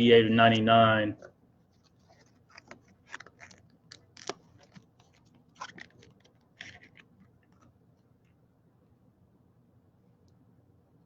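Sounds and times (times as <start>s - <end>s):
cards sliding and rustling: 1.8s - 7.7s.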